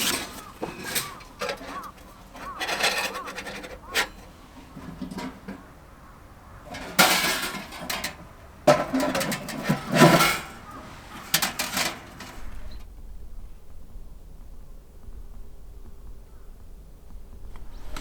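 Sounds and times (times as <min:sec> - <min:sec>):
clatter and rustle of handling: 0:00.0 - 0:12.9.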